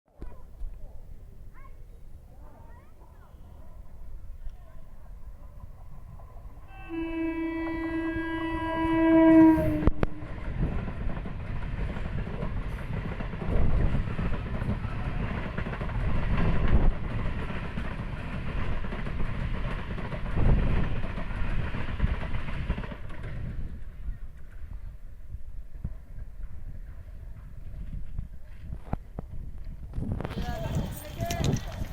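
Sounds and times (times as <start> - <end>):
train horn blast: 6.7 - 10.4
train wheels clattering on rails: 10.1 - 24.8.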